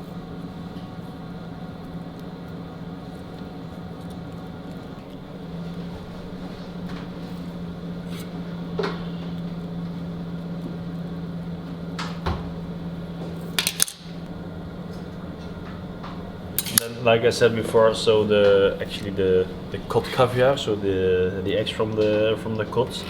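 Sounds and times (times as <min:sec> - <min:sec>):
kitchen ventilation hum: 0:00.0 - 0:23.0
utensil clinking on dishes: 0:16.6 - 0:17.0.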